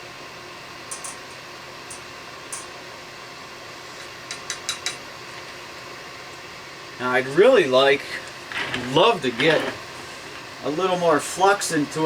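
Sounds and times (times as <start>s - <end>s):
steady low hiss: 5.1s - 12.0s.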